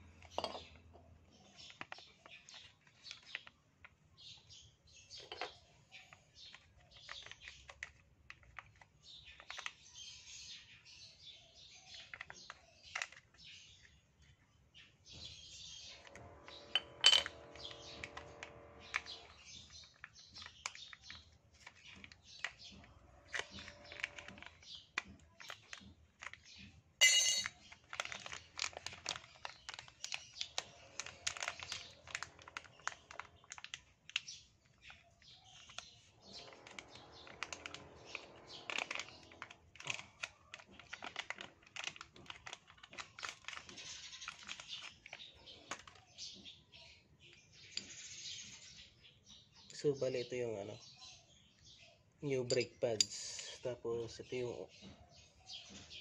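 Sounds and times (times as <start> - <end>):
small parts clicking and clattering: 5.1 - 9.8, 11.9 - 13.6, 15.9 - 46.5
sharp metallic clink: 27.0 - 27.5.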